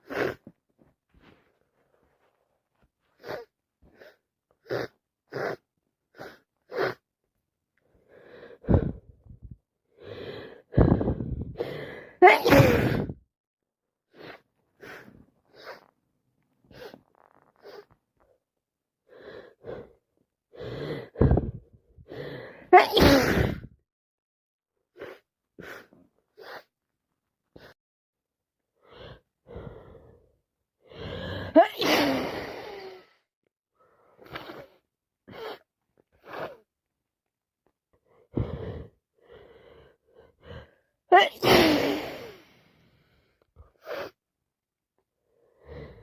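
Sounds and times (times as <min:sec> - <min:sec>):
woman sniffing: 0:03.1 - 0:07.0, 0:14.1 - 0:15.9, 0:16.7 - 0:18.0, 0:24.9 - 0:26.7, 0:30.9 - 0:33.2, 0:34.2 - 0:36.7, 0:41.2 - 0:42.8, 0:43.8 - 0:44.2
woman gasping: 0:10.2 - 0:13.2
woman sneezing: 0:12.2 - 0:13.1, 0:22.7 - 0:23.7, 0:31.5 - 0:33.0, 0:41.1 - 0:42.4.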